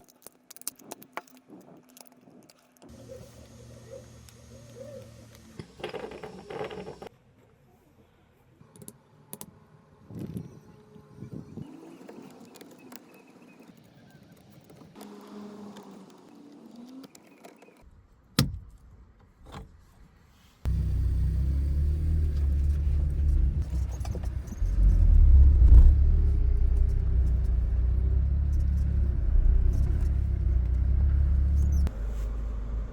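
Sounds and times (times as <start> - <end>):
car engine rumble: 20.7 - 32.9.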